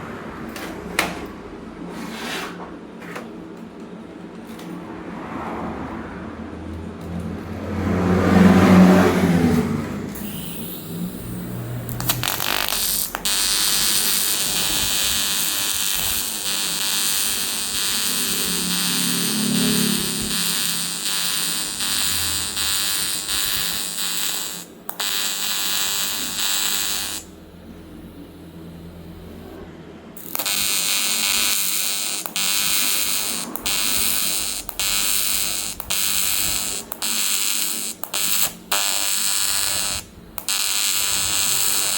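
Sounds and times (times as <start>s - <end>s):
welding arc buzzing: 10.1s - 29.6s, 30.2s - 41.9s.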